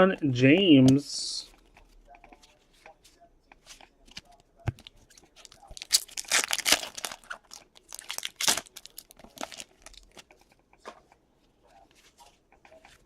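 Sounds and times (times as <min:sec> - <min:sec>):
card pack wrappers crinkling and tearing: 0:04.1 - 0:10.3.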